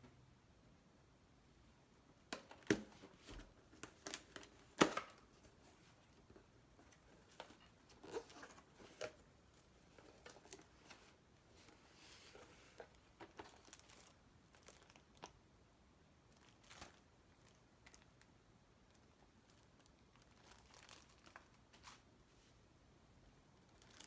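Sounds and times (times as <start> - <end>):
packaging rustling and crinkling: 2.4 - 15.4, 16.3 - 18.3, 18.9 - 22.1, 23.6 - 24.0.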